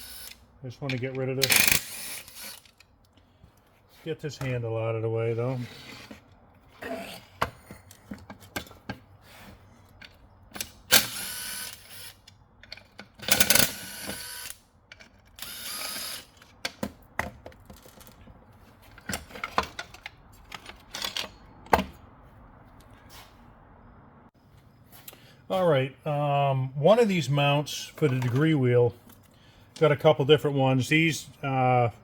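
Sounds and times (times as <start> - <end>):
clatter of tools and parts: 0.2 - 3.7, 11.8 - 21.9.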